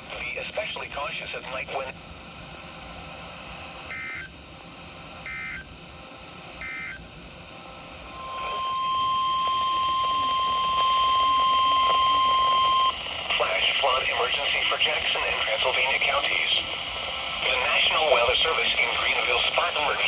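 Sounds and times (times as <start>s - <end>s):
radio hiss: 0.0s - 2.0s, 8.0s - 20.0s
steady warning alarm tone: 3.9s - 4.3s, 5.2s - 5.7s, 6.6s - 7.0s, 8.0s - 17.2s
digital data tone bursts: 8.1s - 14.6s.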